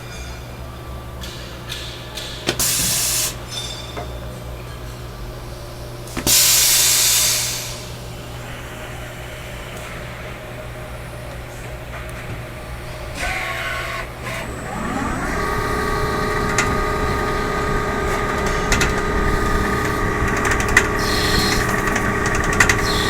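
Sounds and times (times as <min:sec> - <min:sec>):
lathe humming: 0:13.2 - 0:23.0
loud hissing blasts: 0:15.4 - 0:23.0.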